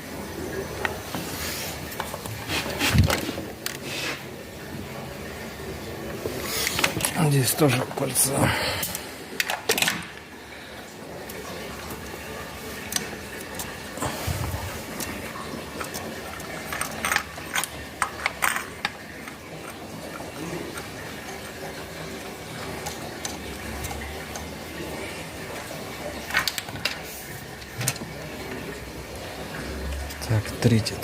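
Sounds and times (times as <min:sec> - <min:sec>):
hand tools clinking on metal: 0:15.8 - 0:20.9.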